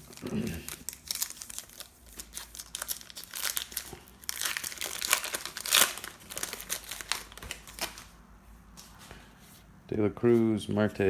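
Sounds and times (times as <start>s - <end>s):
wrapper crinkling: 0.0s - 8.1s.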